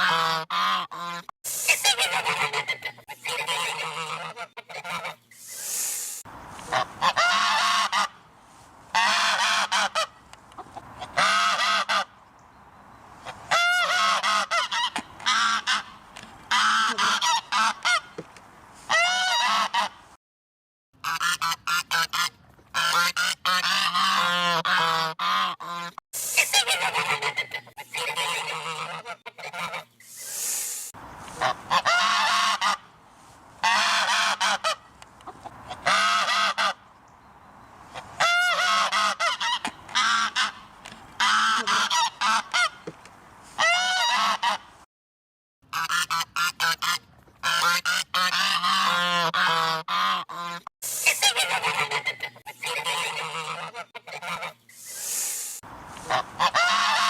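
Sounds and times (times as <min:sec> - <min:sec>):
geese honking: 0:00.0 - 0:05.3, 0:06.6 - 0:08.2, 0:08.9 - 0:12.2, 0:13.2 - 0:18.2, 0:21.0 - 0:30.0, 0:31.2 - 0:33.0, 0:33.6 - 0:36.8, 0:37.9 - 0:42.8, 0:43.6 - 0:44.7, 0:45.7 - 0:55.1, 0:55.9 - 0:57.0.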